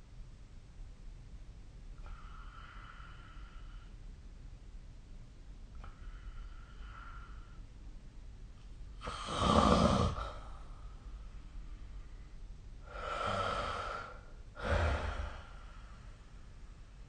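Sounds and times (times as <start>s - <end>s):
heavy noisy breathing: 2.0s - 4.0s, 5.8s - 7.7s, 9.0s - 16.7s.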